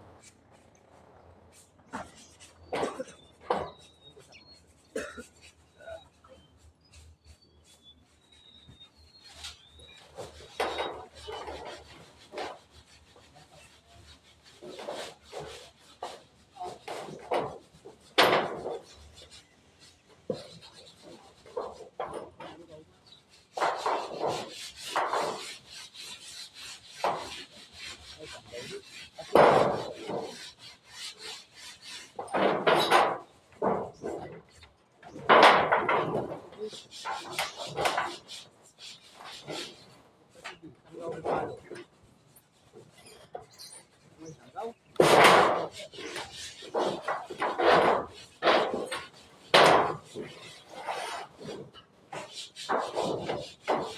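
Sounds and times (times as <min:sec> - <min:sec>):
wood scraping and rubbing: 0:09.1 - 0:53.9
wood being rasped by hand: 0:09.2 - 0:53.9.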